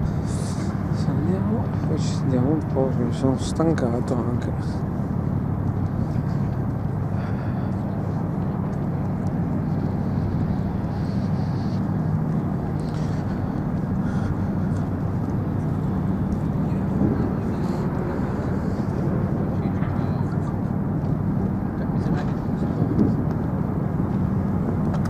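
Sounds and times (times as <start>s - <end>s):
constant hum: 0.0s - 25.0s
low outdoor rumble: 0.0s - 25.0s.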